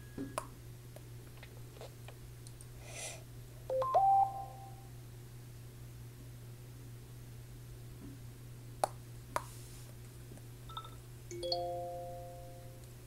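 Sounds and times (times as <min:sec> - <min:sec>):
phone alert tone: 0:03.7 - 0:04.8.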